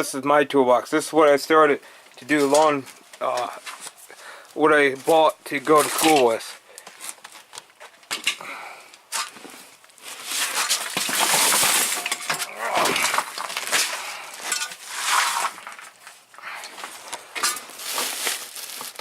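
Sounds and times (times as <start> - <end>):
metal tools clinking and clattering: 5.8 - 6.4, 10.4 - 16.0.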